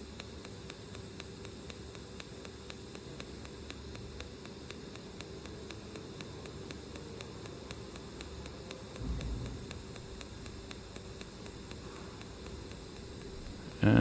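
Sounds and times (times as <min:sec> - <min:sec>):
welding arc hissing and ticking: 0:00.0 - 0:14.0
low thump: 0:09.0 - 0:10.3.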